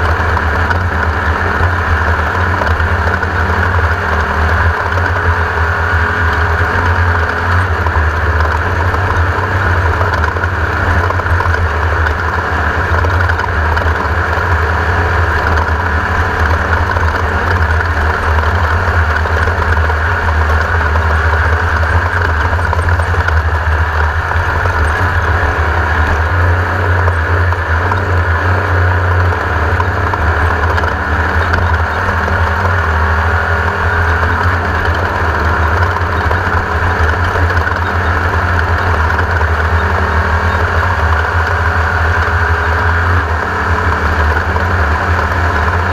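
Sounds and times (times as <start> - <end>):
buggy engine running loudly: 0.0 - 45.9.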